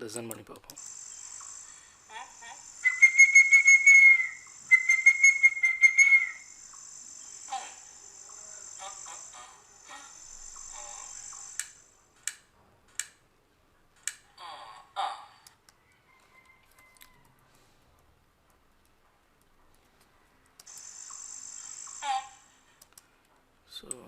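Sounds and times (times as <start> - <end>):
short calls: 0.8 - 11.8
high insect drone: 0.8 - 12.0, 20.7 - 22.6
long bird whistles: 2.6 - 7.5
sharp clicks: 11.3 - 13.2.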